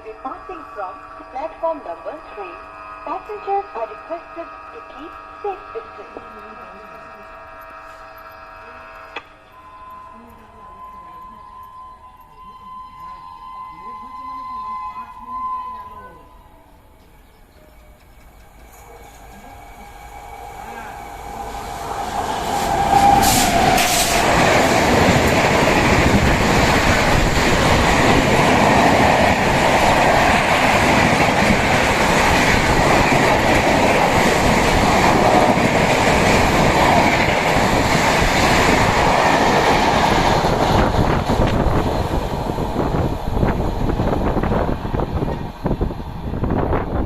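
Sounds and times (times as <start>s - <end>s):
roar of wheels on rail: 2.4s - 47.0s
train horn: 3.1s - 16.9s, 18.7s - 25.1s.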